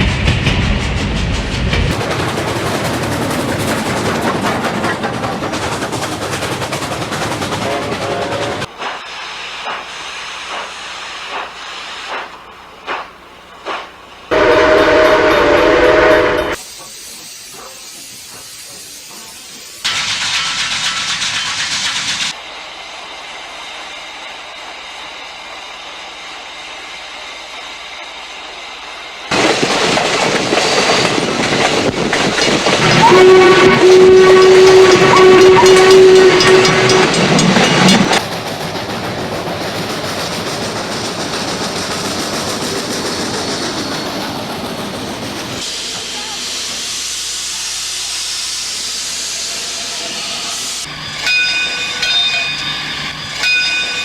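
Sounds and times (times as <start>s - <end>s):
running train: 0.0s - 54.0s
hissing steam: 0.7s - 54.0s
steam whistle: 14.3s - 16.6s, 32.9s - 37.2s.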